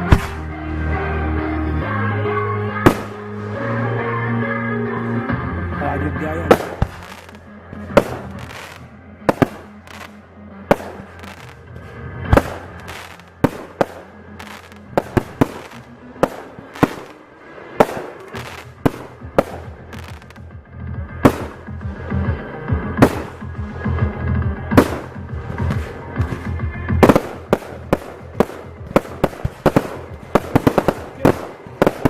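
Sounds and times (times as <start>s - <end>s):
fireworks bangs: 0.0s - 0.6s, 2.8s - 3.6s, 6.3s - 20.5s, 21.2s - 21.8s, 22.9s - 23.9s, 24.7s - 32.0s.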